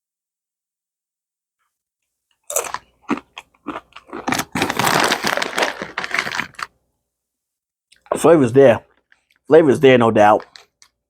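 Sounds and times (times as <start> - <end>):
person chewing potato chips: 2.5 - 6.7.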